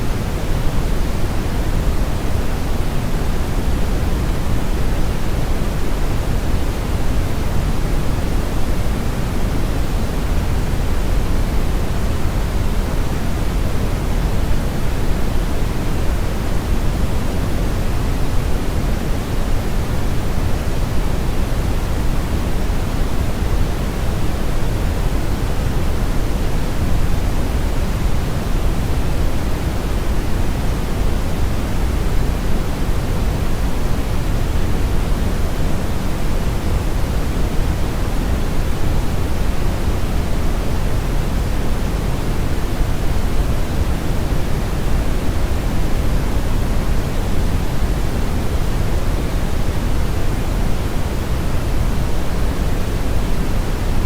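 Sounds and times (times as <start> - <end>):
brown and white noise: 0.0 - 54.0.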